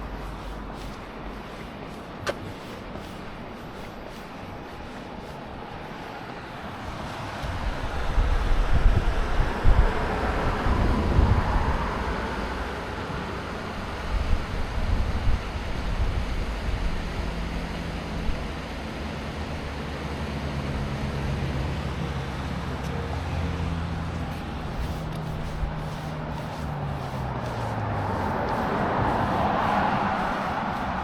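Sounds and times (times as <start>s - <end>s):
low engine hum: 0.0s - 31.0s
traffic noise: 0.0s - 31.0s
vehicle passing: 19.6s - 31.0s.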